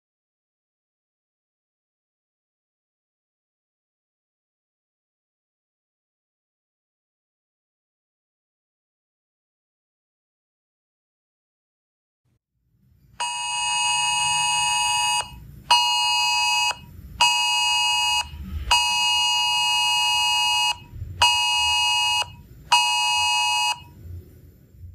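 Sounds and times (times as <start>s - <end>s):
emergency alert tone blasts: 13.2s - 23.9s.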